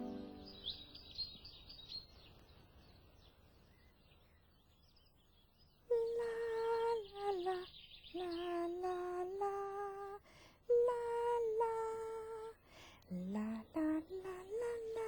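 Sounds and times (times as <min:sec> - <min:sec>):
gentle wordless tune: 0:00.0 - 0:00.9.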